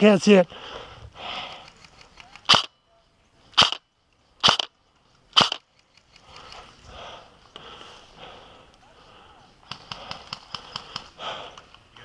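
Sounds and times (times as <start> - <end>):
airsoft gun shots: 2.5 - 2.7, 3.6 - 3.8, 4.4 - 4.7, 5.4 - 5.6.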